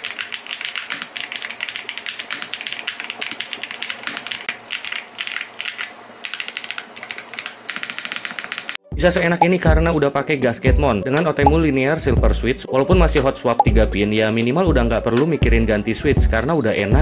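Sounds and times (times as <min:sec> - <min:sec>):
mechanical keyboard typing: 0:00.0 - 0:08.8.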